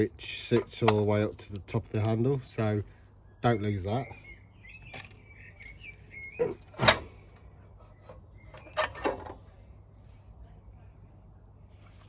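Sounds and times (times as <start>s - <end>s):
knocks and clicks of mower parts: 6.4s - 9.5s.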